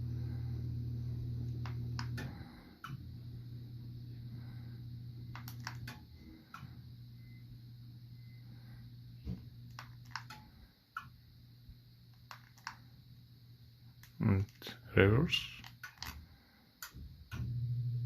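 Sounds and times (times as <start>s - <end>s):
ceiling fan motor hum: 0.0s - 18.0s
light clicks and ticks: 9.7s - 11.1s.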